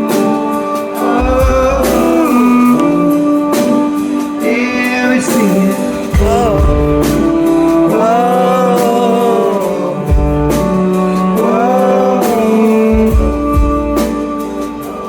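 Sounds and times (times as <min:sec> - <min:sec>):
live band music: 0:00.0 - 0:15.0
low bass hits: 0:01.2 - 0:03.1, 0:06.0 - 0:07.6.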